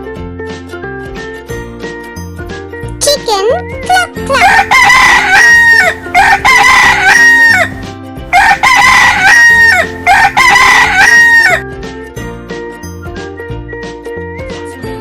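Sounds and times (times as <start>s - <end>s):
light background music: 0.0s - 15.0s
rooster crowing: 4.3s - 11.6s.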